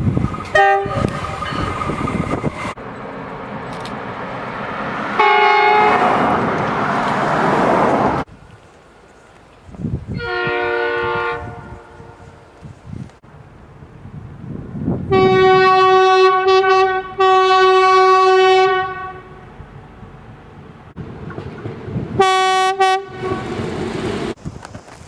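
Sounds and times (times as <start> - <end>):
train rumble: 0.0 - 25.0
train air horn blasts: 0.5 - 1.8, 5.2 - 6.4, 10.1 - 12.6, 15.1 - 19.5, 22.2 - 23.7.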